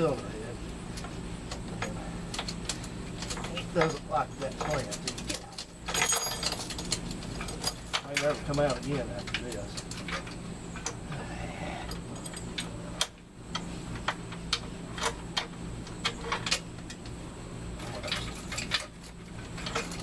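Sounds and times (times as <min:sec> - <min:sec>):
steady low hum: 0:00.0 - 0:20.0
chain links clinking: 0:01.8 - 0:10.9.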